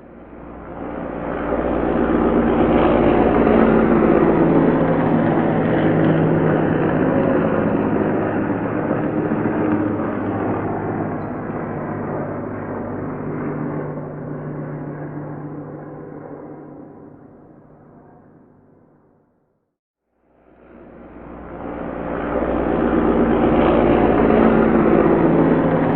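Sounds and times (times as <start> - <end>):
helicopter rotor drone: 0.0 - 19.3, 20.2 - 25.9.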